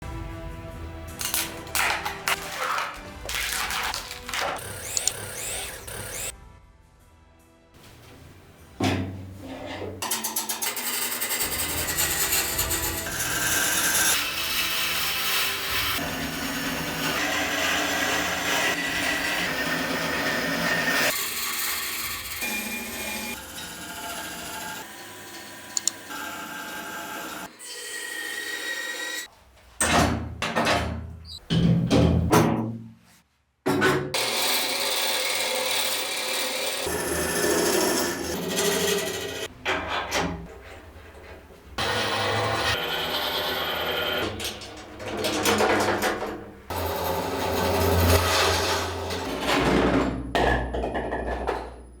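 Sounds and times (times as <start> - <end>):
wood lathe running: 4.3 - 6.3, 10.2 - 29.2, 34.2 - 39.5, 41.8 - 44.4, 46.7 - 49.3
lathe motor hum: 4.6 - 6.3
sharp clicks: 4.6 - 6.3
tool rasping on spinning wood: 4.7 - 6.3.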